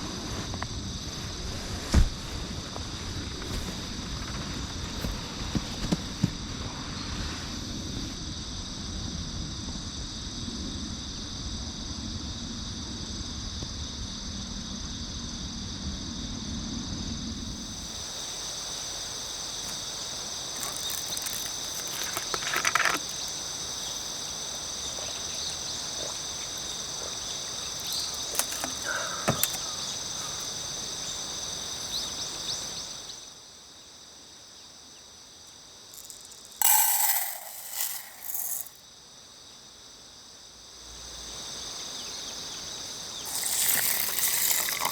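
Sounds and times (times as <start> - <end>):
crickets and insects trilling: 0.0 - 44.9
loud rasping bursts: 43.3 - 44.9.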